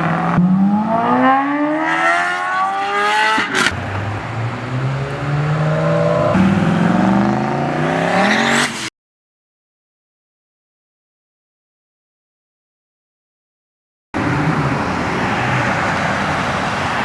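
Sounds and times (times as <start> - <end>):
car engine accelerating hard: 0.0 - 8.9, 14.2 - 17.0.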